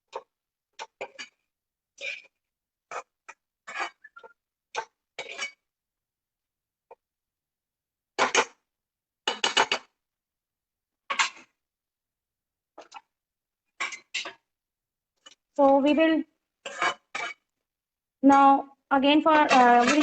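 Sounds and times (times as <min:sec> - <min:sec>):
utensil clattering in a pan: 0:16.7 - 0:17.4, 0:19.3 - 0:20.0.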